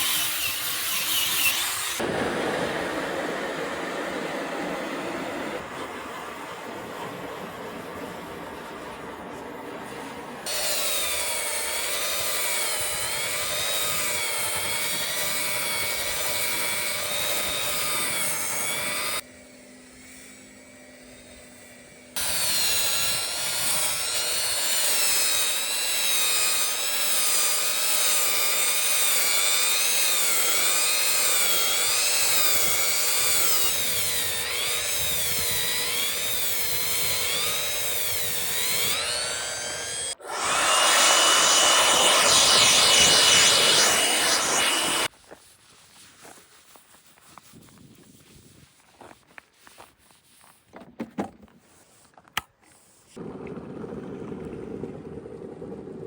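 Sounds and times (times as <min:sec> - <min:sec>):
power tool cutting wood: 0:00.0 - 0:02.1, 0:10.4 - 0:45.1
low hum: 0:40.3 - 0:45.1.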